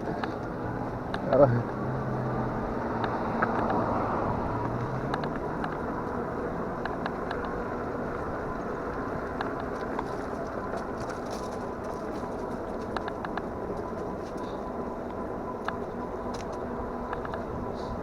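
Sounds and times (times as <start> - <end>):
fat tyres rolling over ground: 0.0 - 18.0
small clicks and rattles: 4.6 - 7.8, 8.5 - 17.5.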